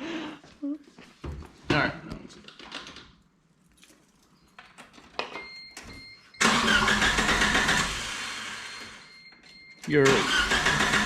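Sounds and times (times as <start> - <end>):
car engine cranking on starter: 6.4 - 9.0, 10.0 - 11.0.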